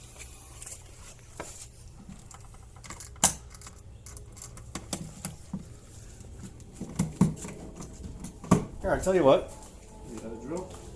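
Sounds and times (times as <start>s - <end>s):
hand tools clicking and tapping: 2.2s - 8.7s.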